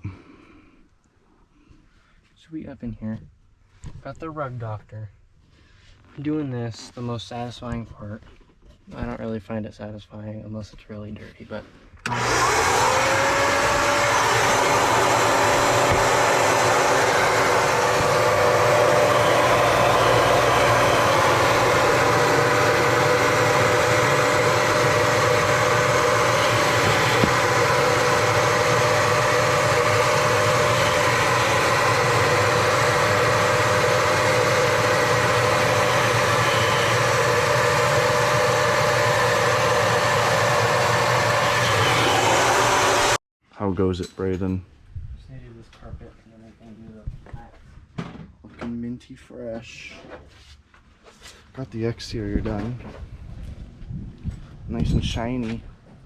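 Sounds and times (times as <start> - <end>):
suction motor whining: 12.0 - 43.2.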